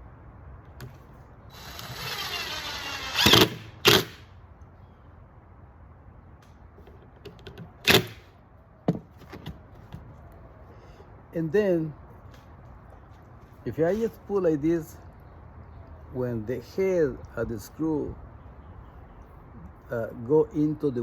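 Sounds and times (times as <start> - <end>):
power drill driving a screw: 1.5 - 4.2, 7.8 - 8.2.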